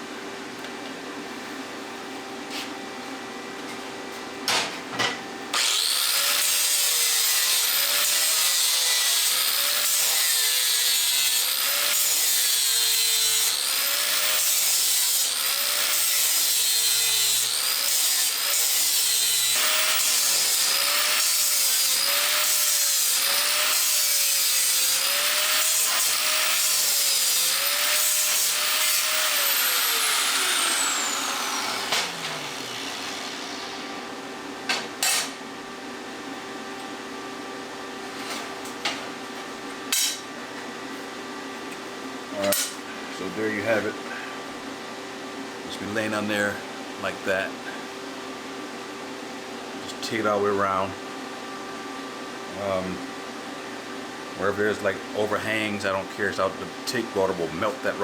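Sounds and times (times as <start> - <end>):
electric grinder grinding steel: 5.5 - 34.2.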